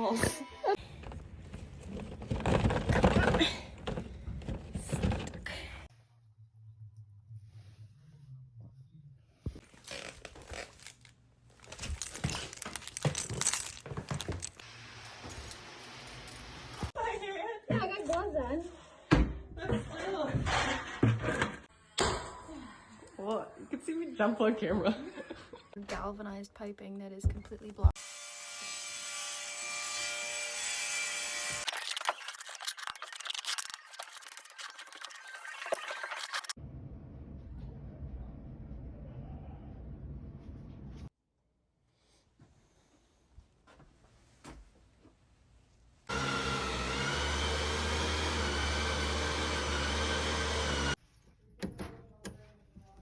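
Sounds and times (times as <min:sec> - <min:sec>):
metal clinking and rattling: 0:09.7 - 0:16.9
power tool running on pipe: 0:46.1 - 0:51.0.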